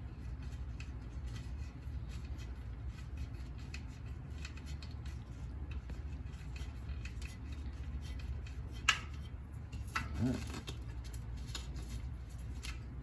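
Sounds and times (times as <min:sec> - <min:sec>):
metallic clicks and scrapes: 0:00.0 - 0:13.0
steady low hum: 0:00.0 - 0:13.0.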